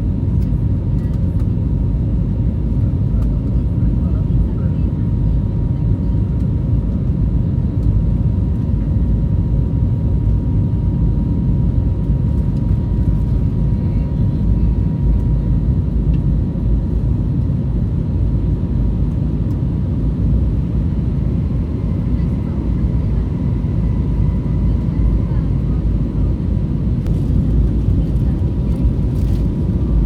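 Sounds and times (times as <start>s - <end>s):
jet engines rumbling: 0.0s - 30.0s.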